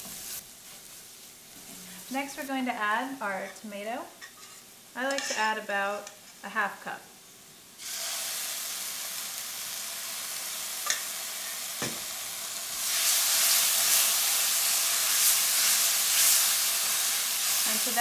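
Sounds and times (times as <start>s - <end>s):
food sizzling in oil: 0.0s - 3.6s, 7.8s - 18.0s.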